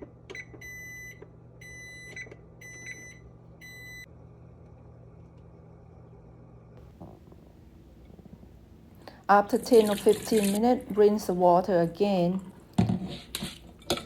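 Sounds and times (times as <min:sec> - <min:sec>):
steady low hum: 0:00.0 - 0:14.0
appliance long beeps: 0:00.3 - 0:04.1.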